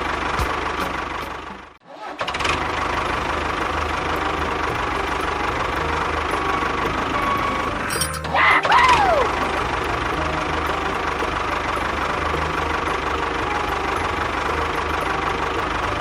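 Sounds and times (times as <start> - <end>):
small tractor engine running: 0.0 - 16.0.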